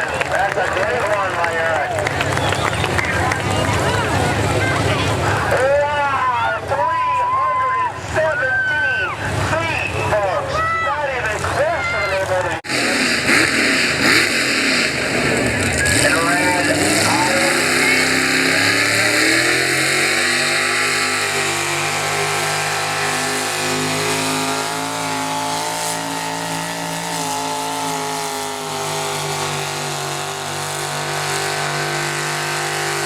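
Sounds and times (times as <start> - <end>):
truck engine at full throttle: 0.0 - 33.0.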